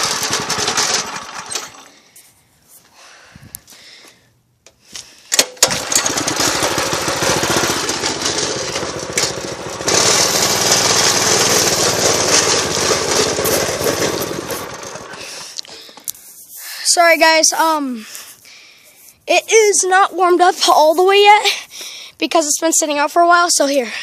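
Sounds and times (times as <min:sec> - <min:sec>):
go-kart engine running: 0:00.0 - 0:01.9, 0:05.6 - 0:15.5.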